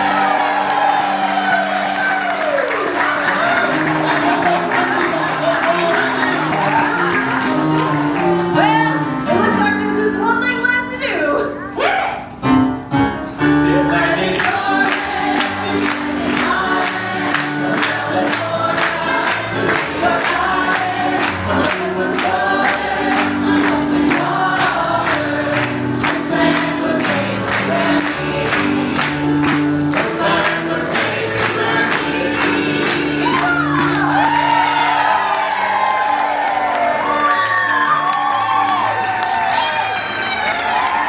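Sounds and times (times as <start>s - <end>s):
group singing: 13.6s - 34.6s.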